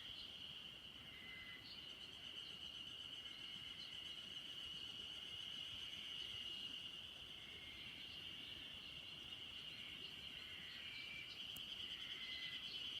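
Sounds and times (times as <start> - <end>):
insects trilling: 0.0 - 13.0.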